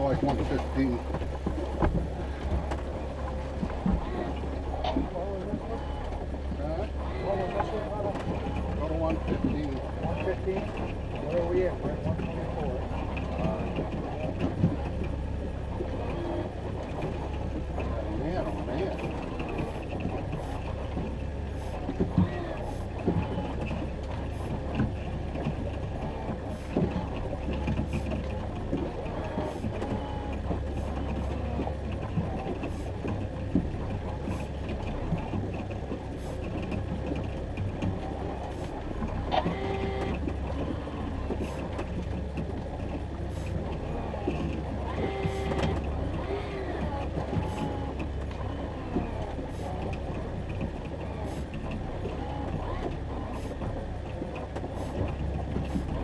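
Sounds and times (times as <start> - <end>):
boat motor droning: 0.0 - 56.0.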